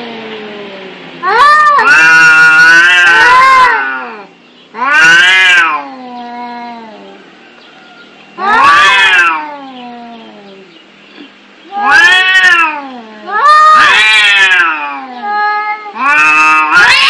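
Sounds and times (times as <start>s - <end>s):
cats yowling: 0.0s - 10.7s, 11.6s - 17.0s.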